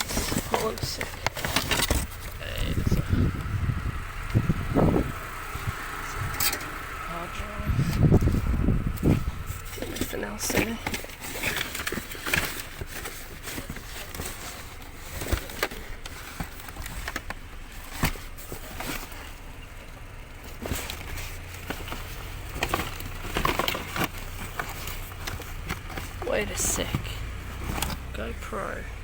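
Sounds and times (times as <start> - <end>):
rummaging through junk: 0.0 - 29.0.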